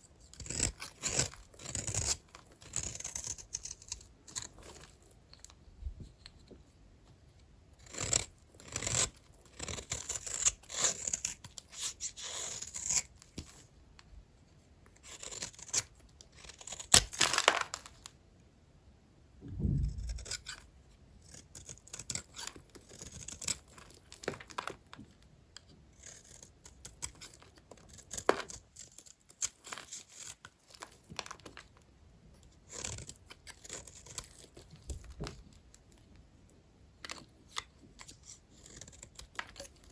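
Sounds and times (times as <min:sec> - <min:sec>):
knife scraping soap: 0:00.0 - 0:18.1, 0:19.9 - 0:36.2, 0:37.0 - 0:39.9
dull low thump: 0:19.4 - 0:20.3.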